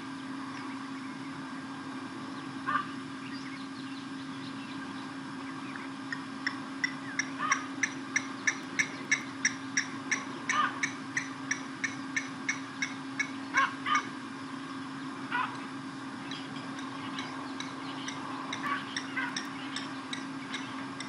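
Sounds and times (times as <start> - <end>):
drawn-out bird cries: 2.4 - 21.0
lapwings metallic alarm calls: 2.6 - 3.0, 6.9 - 14.2, 15.3 - 20.9.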